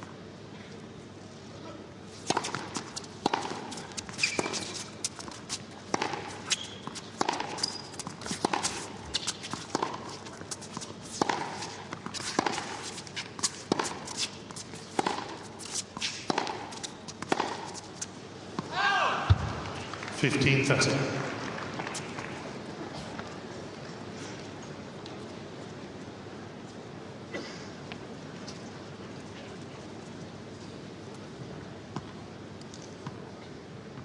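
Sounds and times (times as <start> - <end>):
shoes squeaking on court: 2.1 - 18.7
ball bouncing on court: 2.3 - 4.7, 5.9 - 8.8, 11.2 - 12.8, 16.3 - 17.7, 18.5 - 19.8
tennis ball struck by rackets: 2.3 - 4.7, 5.8 - 8.8, 9.5 - 10.1, 10.8 - 12.8, 13.4 - 14.3, 14.9 - 15.4, 16.0 - 17.8.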